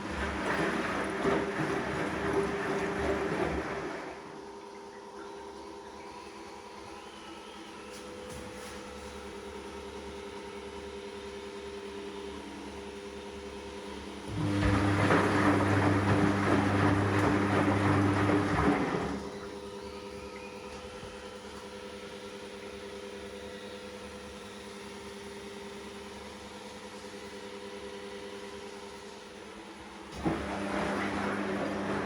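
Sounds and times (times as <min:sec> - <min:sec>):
washing machine motor humming: 0:00.0 - 0:22.8, 0:28.5 - 0:32.0.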